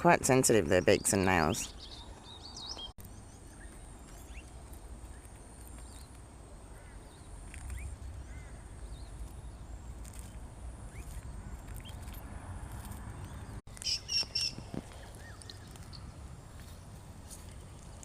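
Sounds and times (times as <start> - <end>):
birds chirping: 0.1 - 12.3, 12.9 - 17.9
loud high bird calls: 13.8 - 16.1.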